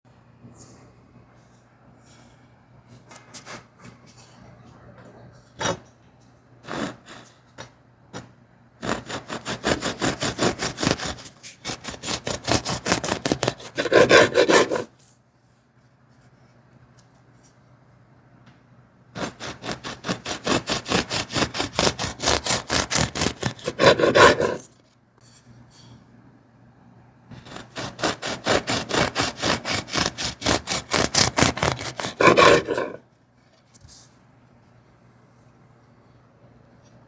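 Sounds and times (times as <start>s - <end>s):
bread knife sawing crusty loaf: 6.6s - 7.4s, 8.8s - 14.9s, 19.2s - 24.8s, 27.3s - 33.0s.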